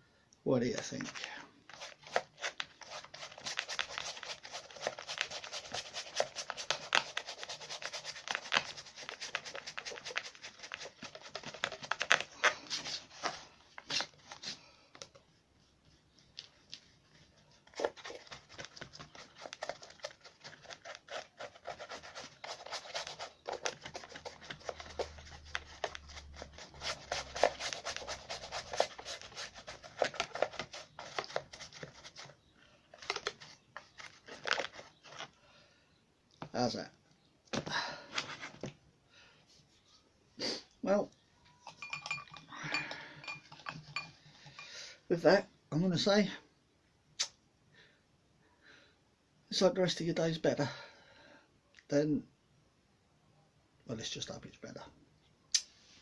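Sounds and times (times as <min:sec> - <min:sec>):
card rubbing and crackling: 0:00.9 - 0:14.5, 0:16.2 - 0:35.4.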